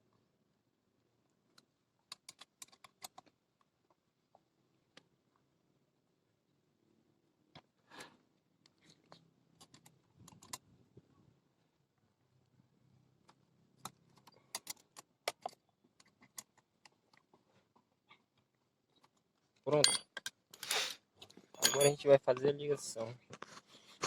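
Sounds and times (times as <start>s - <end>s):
metal parts and tools clinking: 19.7s - 20.8s, 21.6s - 22.1s.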